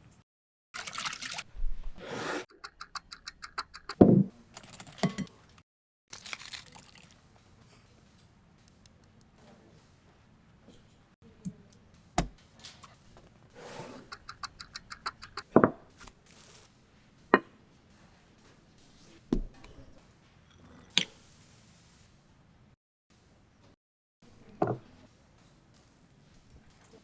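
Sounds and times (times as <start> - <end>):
utensils knocking on work surface: 14.0 - 15.7.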